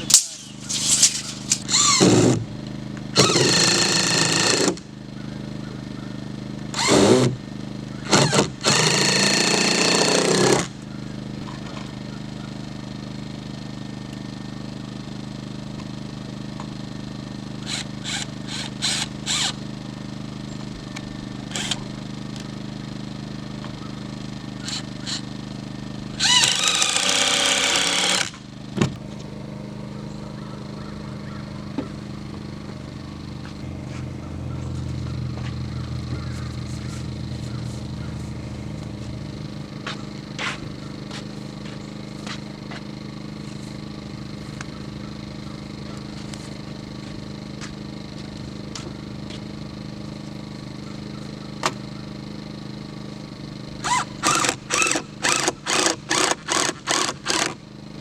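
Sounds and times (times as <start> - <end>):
engine running: 0.0 - 58.0.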